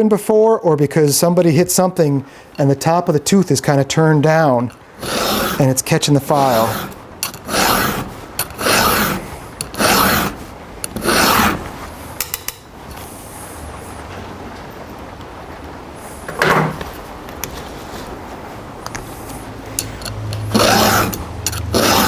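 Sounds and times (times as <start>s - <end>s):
hand file rasping on chain: 5.0s - 11.7s, 19.8s - 22.0s.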